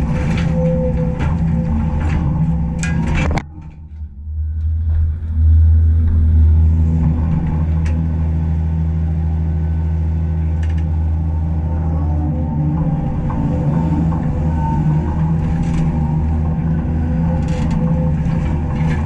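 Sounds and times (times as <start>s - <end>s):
diesel engine running: 0.0s - 19.0s.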